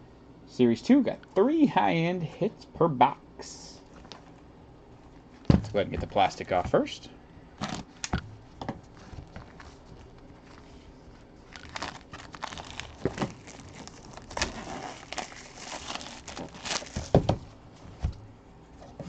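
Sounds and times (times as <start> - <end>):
plastic shrink-wrap tearing: 11.4 - 17.2.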